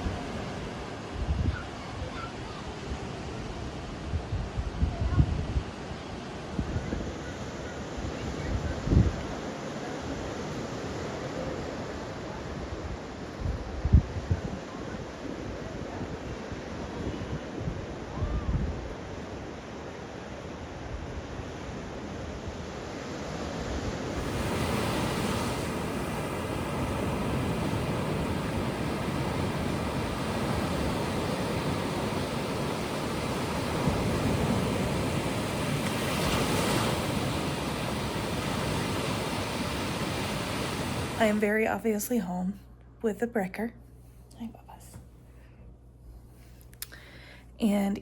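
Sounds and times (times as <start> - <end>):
wind rumbling on microphone: 0.0 - 2.3, 3.0 - 9.4, 12.3 - 19.4, 23.6 - 41.4
ocean surf breaking on beach: 0.0 - 41.5.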